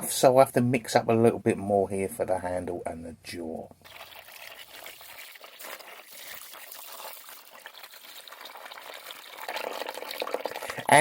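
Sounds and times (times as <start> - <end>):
water pouring into a container: 3.8 - 11.0.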